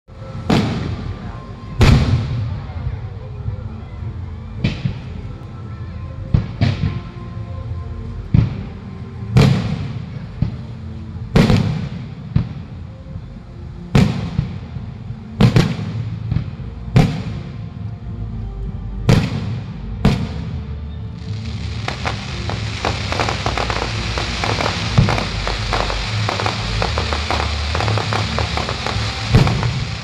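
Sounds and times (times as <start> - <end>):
faint background music: 0.1 - 30.0
fireworks bangs: 21.2 - 30.0.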